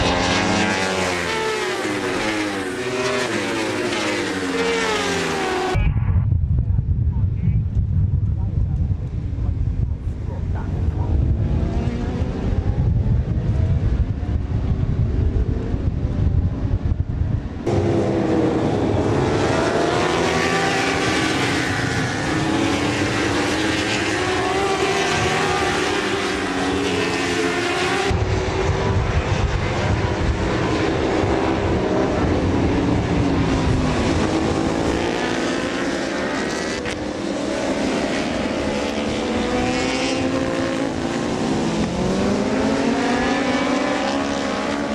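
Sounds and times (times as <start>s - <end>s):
racing motorcycle engines revving: 0.0s - 5.9s, 8.3s - 44.9s
low rumble: 5.7s - 19.5s
wind on microphone: 5.7s - 20.0s, 27.8s - 35.4s.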